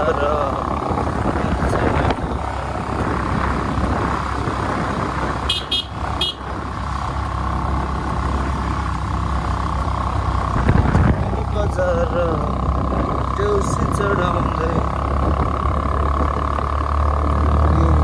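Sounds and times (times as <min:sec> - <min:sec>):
vehicle running on road: 0:00.0 - 0:18.0
high-pitched horn toots: 0:05.4 - 0:06.5.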